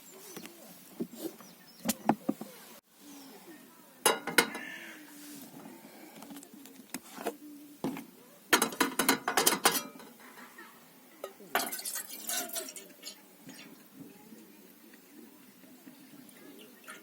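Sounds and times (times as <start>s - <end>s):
cookware and cutlery clinking: 4.0s - 4.7s, 8.5s - 10.6s, 11.2s - 13.8s.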